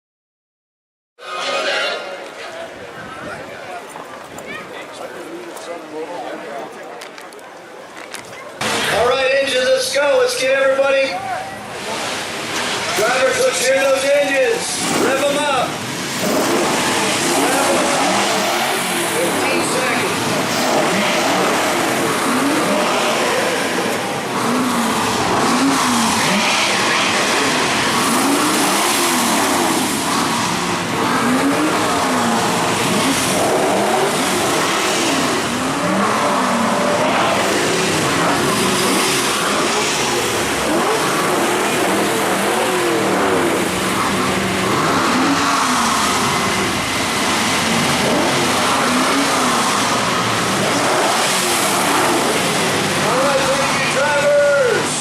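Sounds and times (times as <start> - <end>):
hot rod engines revving: 1.2 - 55.0.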